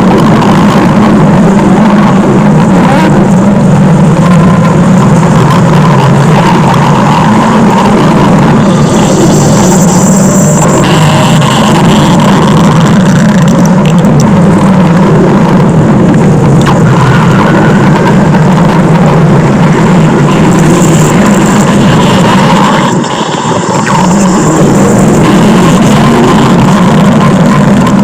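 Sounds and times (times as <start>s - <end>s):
distorted stomach growl: 0.0s - 28.0s.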